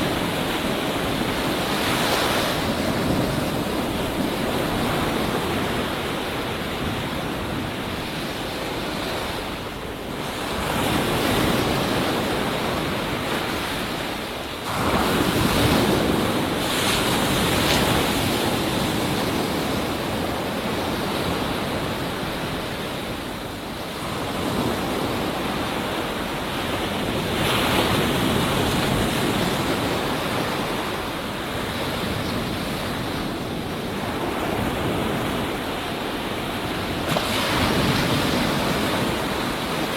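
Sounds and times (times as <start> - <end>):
ocean surf breaking: 0.0 - 39.9.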